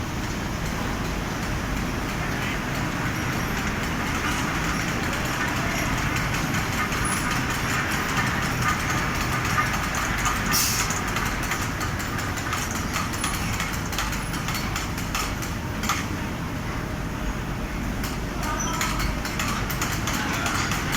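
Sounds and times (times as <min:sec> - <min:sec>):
small mechanical clicks and knocks: 0:11.0 - 0:16.1.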